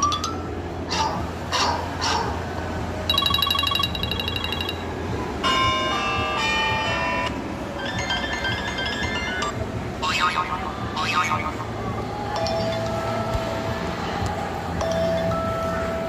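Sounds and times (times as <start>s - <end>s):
melodic phone chimes: 0.0s - 0.5s, 3.1s - 9.6s
fast pulsing phone beep: 3.1s - 4.9s.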